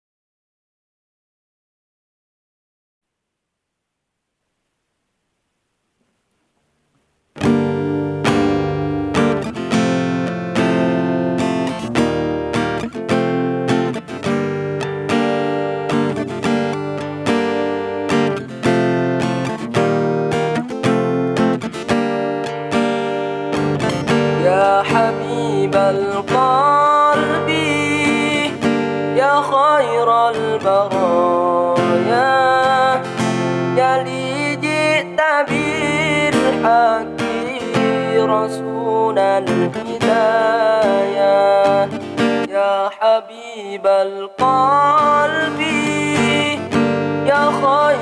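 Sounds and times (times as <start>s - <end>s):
acoustic guitar strummed and picked: 7.3s - 48.0s
person singing: 23.6s - 48.0s.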